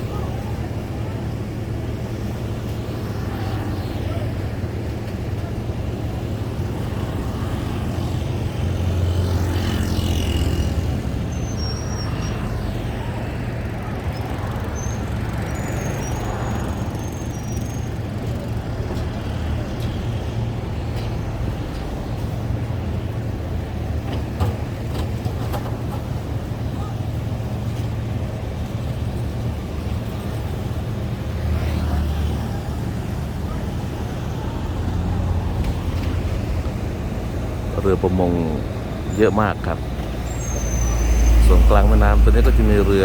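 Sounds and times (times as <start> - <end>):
vehicle passing close: 0.0 - 26.9, 27.7 - 43.0
road traffic: 0.0 - 43.0.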